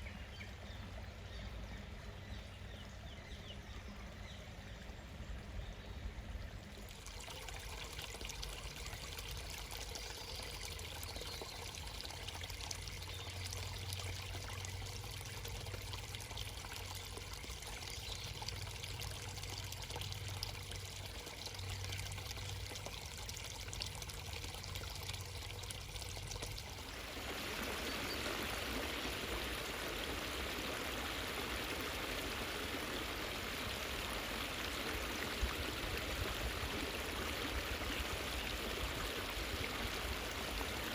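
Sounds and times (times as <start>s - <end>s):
stream water trickling and rushing: 0.0s - 40.9s.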